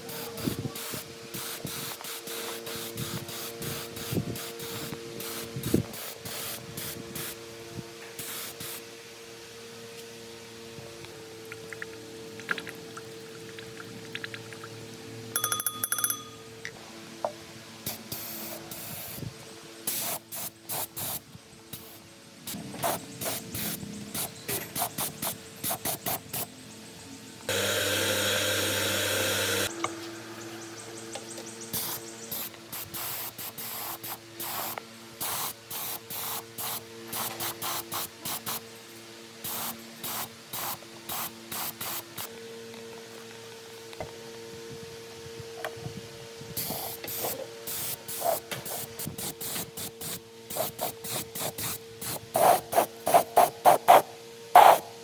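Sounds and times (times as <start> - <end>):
hissing spray bursts: 0.0 - 7.4, 8.2 - 8.8, 17.8 - 19.3, 19.9 - 21.2, 21.8 - 26.5, 31.7 - 38.6, 39.4 - 42.3, 46.6 - 54.9.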